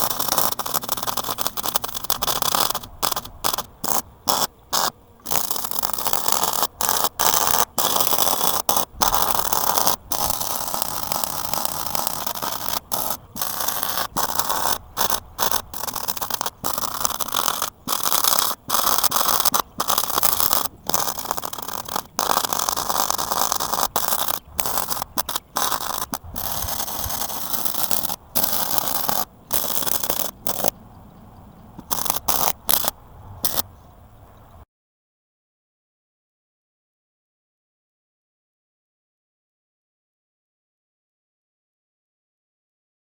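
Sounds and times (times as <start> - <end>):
welding arc crackling and hissing: 0.0 - 30.8, 31.8 - 33.6.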